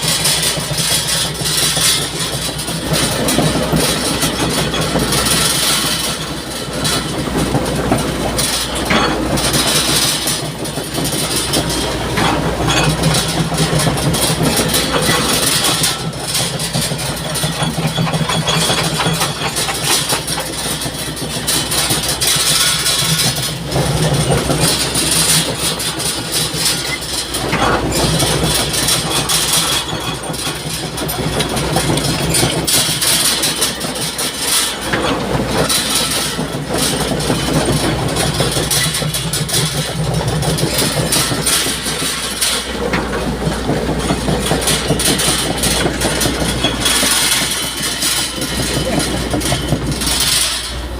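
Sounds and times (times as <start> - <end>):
excavator engine running: 0.0 - 50.9.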